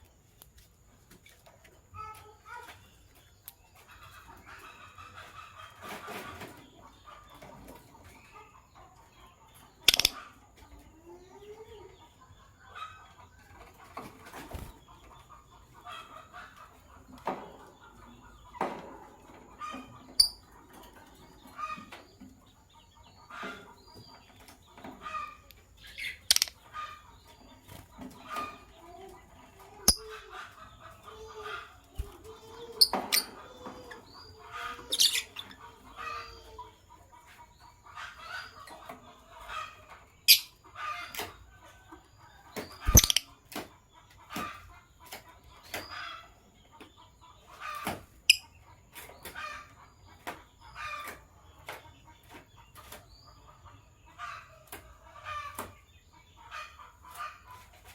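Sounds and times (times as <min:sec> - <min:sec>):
lovebirds chirping: 0:21.4 - 0:44.8.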